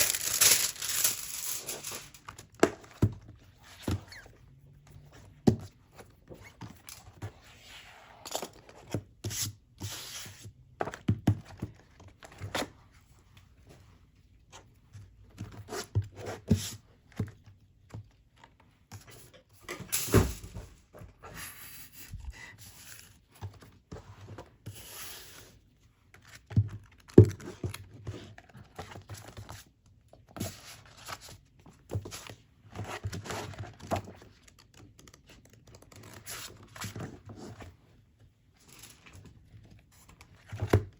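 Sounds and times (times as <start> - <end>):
packaging rustling and tearing: 0.0 - 2.3.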